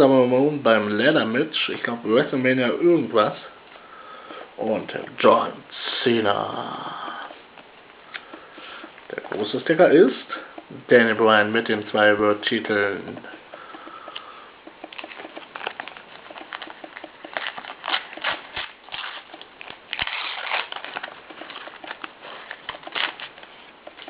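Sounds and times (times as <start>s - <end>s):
stickers shuffling: 8.1s - 24.0s
paper packet tearing and crinkling: 15.0s - 24.0s.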